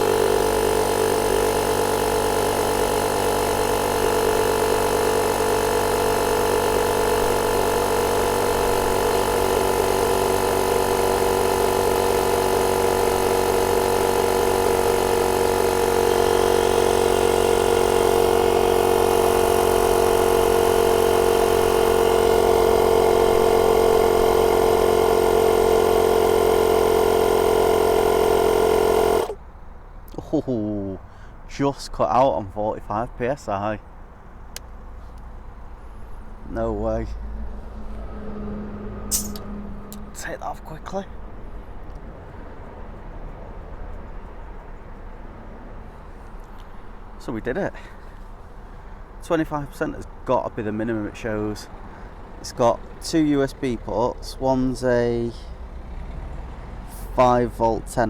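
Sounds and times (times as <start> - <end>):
small air compressor running: 0.0 - 29.4, 54.6 - 57.9.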